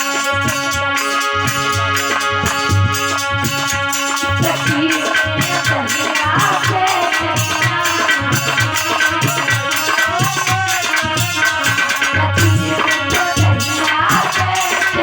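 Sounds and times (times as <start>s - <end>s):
hand drums beating: 0.0s - 15.0s.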